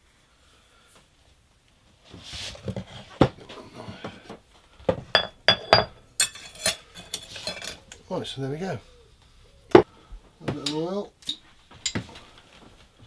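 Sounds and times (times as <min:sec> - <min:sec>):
cookware and utensils clinking: 0:05.1 - 0:08.1.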